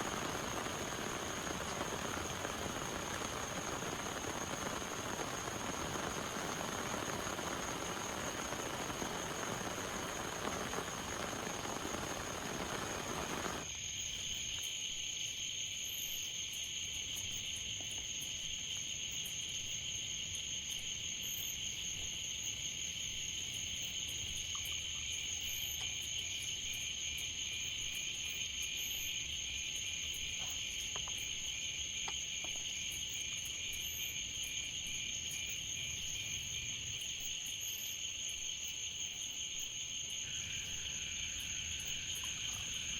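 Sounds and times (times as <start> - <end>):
insect fast pulsing trill: 0.0 - 13.7, 40.0 - 42.9
steady rain hiss: 0.0 - 13.7, 26.8 - 42.9
insects chirping: 0.0 - 42.9.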